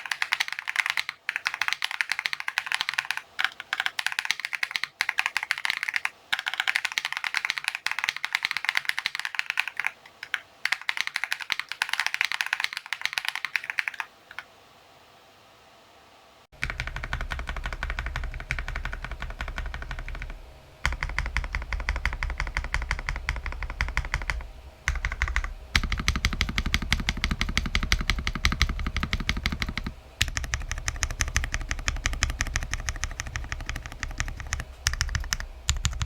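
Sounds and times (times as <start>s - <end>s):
mechanical keyboard typing: 0.0s - 14.5s, 16.6s - 36.0s.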